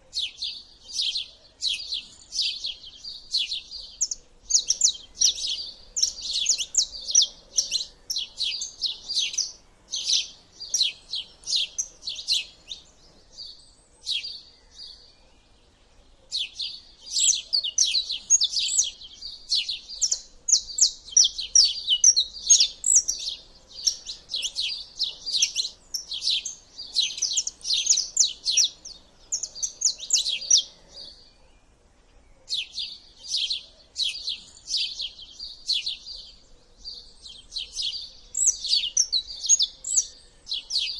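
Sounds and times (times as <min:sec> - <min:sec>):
songbirds chirping: 0:00.0 - 0:40.9.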